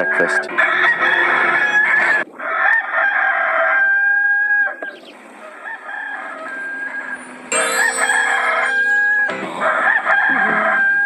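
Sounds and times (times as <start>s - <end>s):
rooster crowing: 0.6s - 4.8s, 5.4s - 7.2s, 9.6s - 11.0s.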